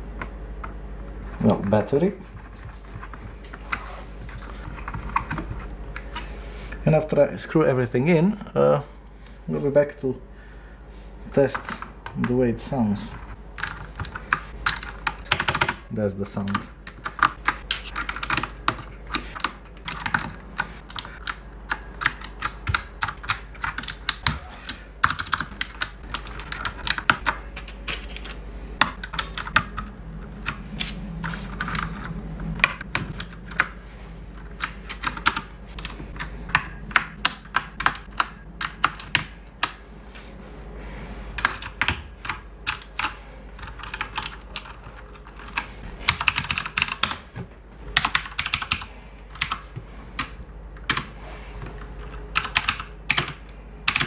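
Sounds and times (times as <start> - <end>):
mechanical keyboard clicks: 13.6 - 15.8, 16.4 - 33.8, 34.6 - 39.8, 41.4 - 47.2, 48.0 - 49.6, 52.1 - 54.0.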